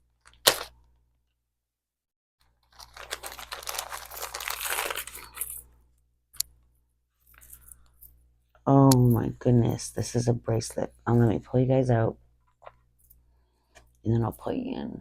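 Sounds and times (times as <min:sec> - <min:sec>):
wrapping crinkling and tearing: 0:02.4 - 0:05.8.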